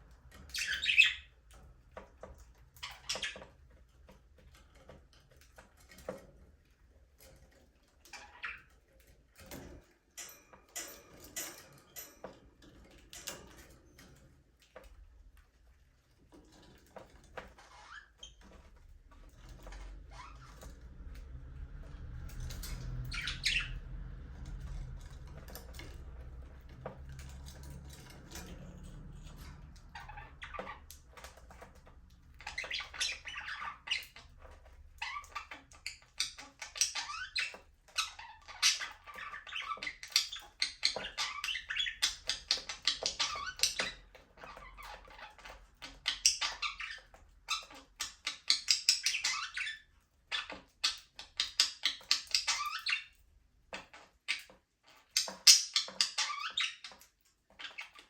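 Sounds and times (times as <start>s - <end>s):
budgerigars chattering and warbling: 0.5s - 1.3s, 23.0s - 24.0s, 32.3s - 53.1s, 53.8s - 58.0s
low rumble: 19.6s - 31.1s.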